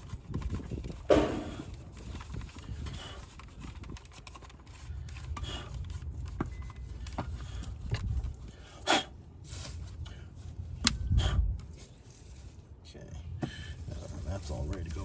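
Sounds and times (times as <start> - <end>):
rag rubbing and scraping: 0.0 - 10.6.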